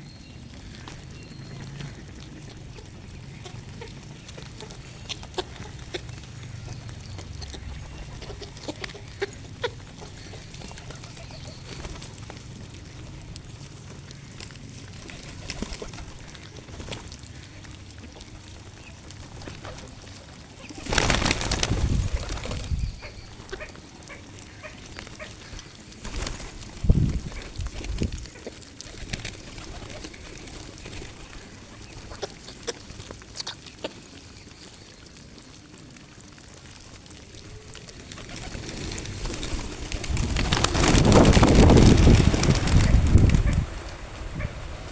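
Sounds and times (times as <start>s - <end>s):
birds pecking taps: 0.3s - 26.5s
rustling noise: 18.6s - 31.6s, 36.8s - 44.9s.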